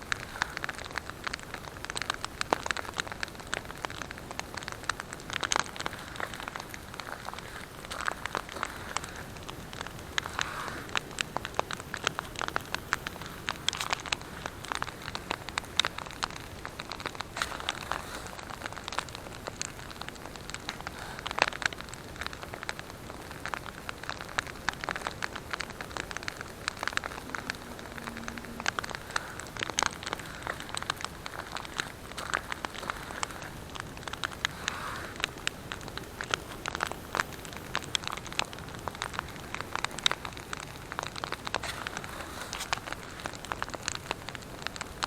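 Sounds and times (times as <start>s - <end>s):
campfire crackling and popping: 0.0s - 45.0s.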